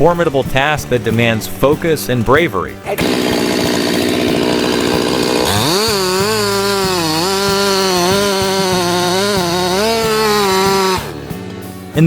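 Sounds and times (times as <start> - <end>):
chainsaw engine revving: 2.9 - 11.3.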